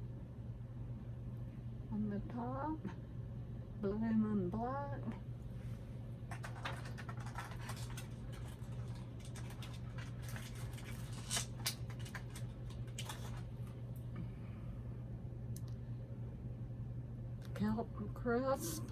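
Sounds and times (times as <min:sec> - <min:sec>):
steady low hum: 0:00.0 - 0:18.9
plastic packaging clicks and crinkles: 0:06.3 - 0:13.8.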